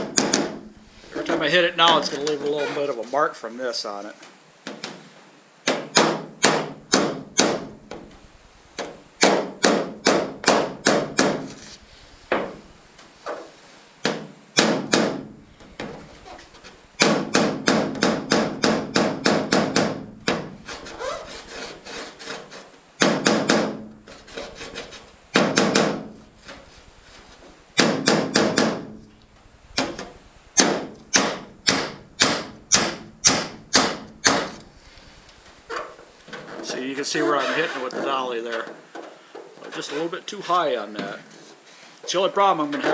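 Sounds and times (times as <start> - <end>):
hammer tapping on metal hull: 17.0 - 20.6.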